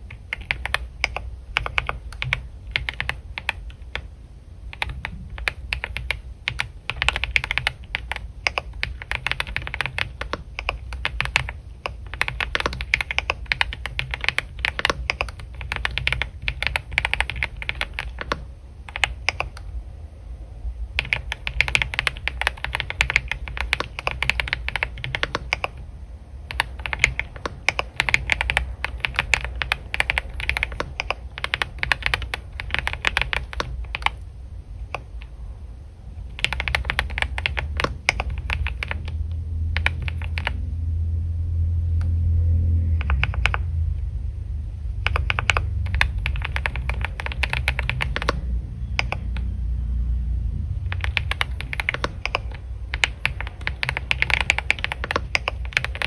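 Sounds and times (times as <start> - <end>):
keyboard key clicks: 4.8 - 19.7, 26.5 - 34.2, 43.0 - 43.6, 45.1 - 48.4, 49.0 - 49.5, 50.9 - 56.0
low rumble: 34.1 - 53.9.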